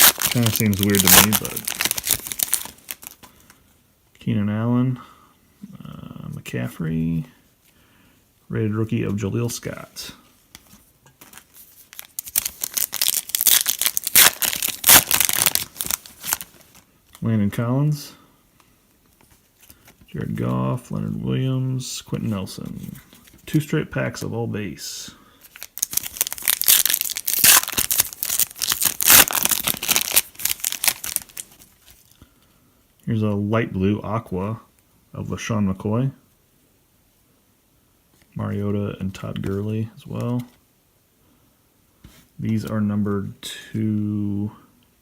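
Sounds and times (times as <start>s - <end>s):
card pack wrapper tearing and crinkling: 0.0s - 3.2s, 11.2s - 16.8s, 25.4s - 32.0s.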